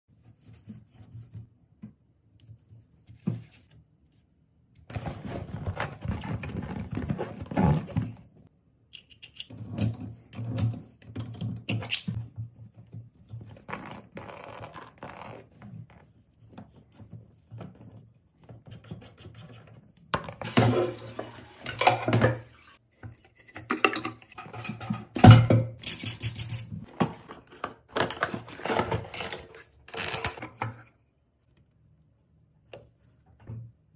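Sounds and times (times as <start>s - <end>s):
plastic parts scraping and clicking: 25.8s - 30.9s.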